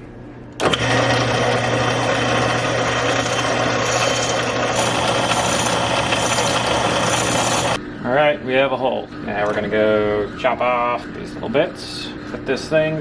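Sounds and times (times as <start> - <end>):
power drill humming: 0.6 - 7.8.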